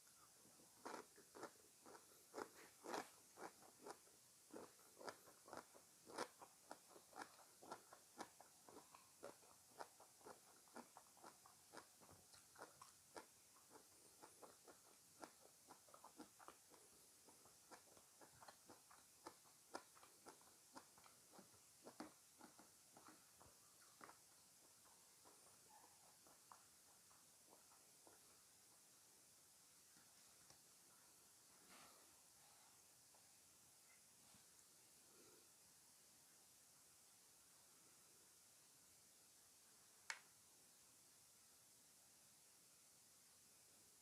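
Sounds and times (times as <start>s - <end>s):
person chewing crunchy fruit: 0.1s - 28.6s.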